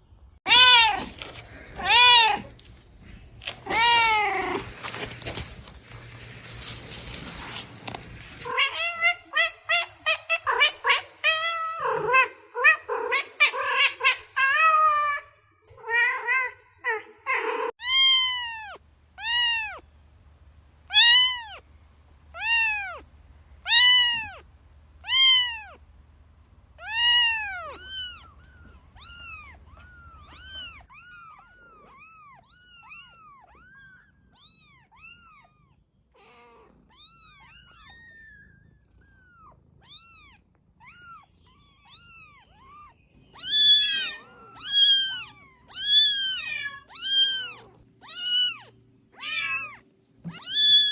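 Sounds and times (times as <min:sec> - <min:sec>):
kittens meowing: 0:17.3 - 0:19.9, 0:20.8 - 0:50.9.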